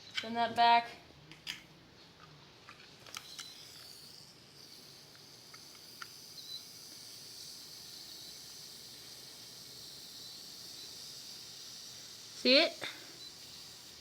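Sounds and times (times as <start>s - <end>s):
cola fizzing hiss: 3.8s - 14.0s.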